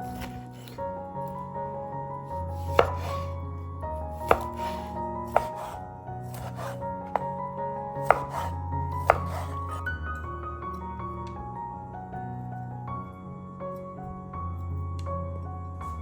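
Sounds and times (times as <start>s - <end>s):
knife chopping on cutting board: 0.0s - 0.8s, 2.6s - 3.3s, 4.2s - 7.3s, 8.0s - 9.8s
soft background music: 0.0s - 16.0s.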